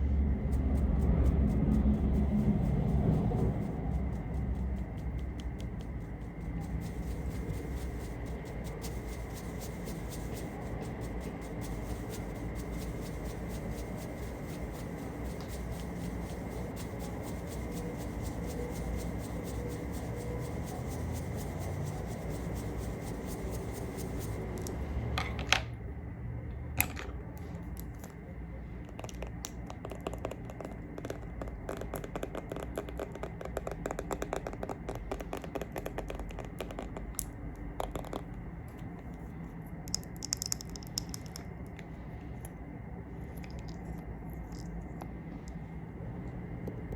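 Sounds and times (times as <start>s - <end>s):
rapid tapping: 0.6s - 24.8s, 28.9s - 38.3s
makeup scratching and clicking: 1.9s - 25.4s, 28.9s - 39.2s, 39.9s - 41.9s, 43.4s - 45.1s.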